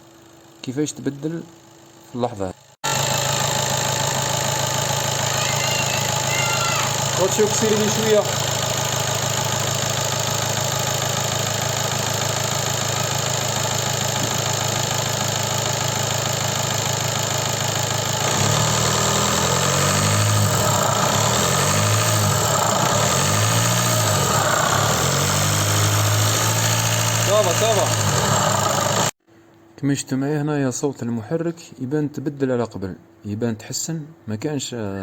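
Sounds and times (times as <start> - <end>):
diesel engine idling and revving: 2.8 - 29.2.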